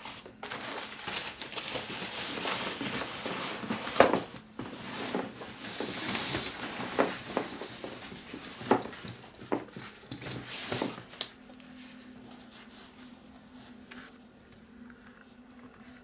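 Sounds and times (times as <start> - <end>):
rustling of bag being unpacked: 0.0 - 11.3.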